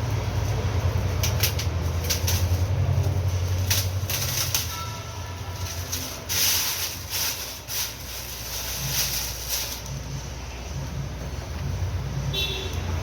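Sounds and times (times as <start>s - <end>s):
rustling scrapes: 0.4s - 10.4s.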